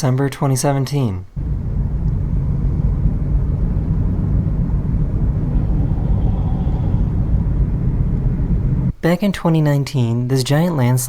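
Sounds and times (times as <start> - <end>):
car driving on road: 1.4 - 8.9.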